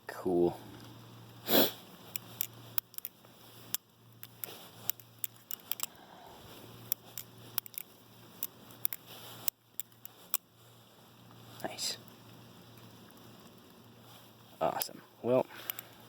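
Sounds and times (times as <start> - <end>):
butterfly knife metallic clicks: 2.1 - 5.9, 6.9 - 10.4.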